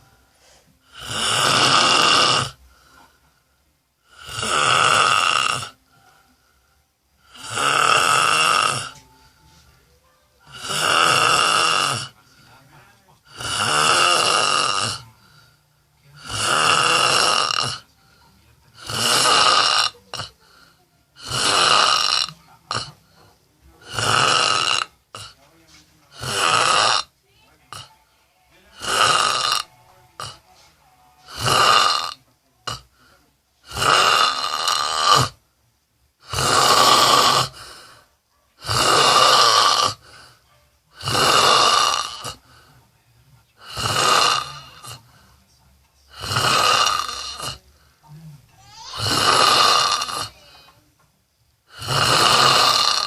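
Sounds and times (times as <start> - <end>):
quiet breathing: 0.0 - 1.4, 2.5 - 4.5, 5.6 - 7.6, 8.7 - 10.8, 11.9 - 21.4, 22.0 - 24.2, 27.2 - 34.0, 37.3 - 53.0
person snoring loudly: 0.9 - 2.6, 4.0 - 5.8, 7.2 - 9.0, 10.5 - 12.2, 13.3 - 15.1, 16.2 - 17.9, 18.8 - 20.4, 21.2 - 22.9, 23.8 - 25.4, 26.2 - 27.1, 28.8 - 30.4, 31.3 - 32.9, 33.6 - 35.4, 36.2 - 37.8, 38.6 - 40.2, 41.0 - 42.4, 43.6 - 45.0, 46.1 - 47.6, 48.6 - 50.7, 51.7 - 53.0.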